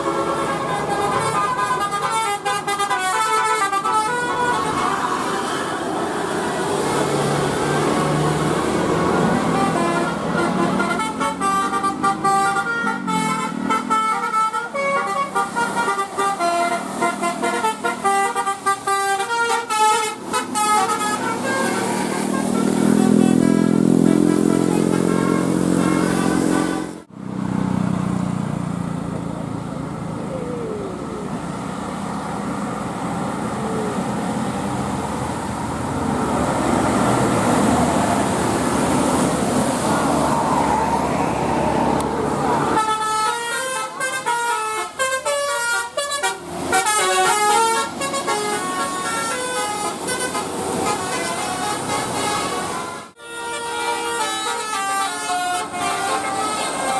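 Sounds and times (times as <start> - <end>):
bus air horns playing a tune: 0.0 - 27.1, 42.5 - 56.9
bus engine and traffic noise: 0.0 - 56.9.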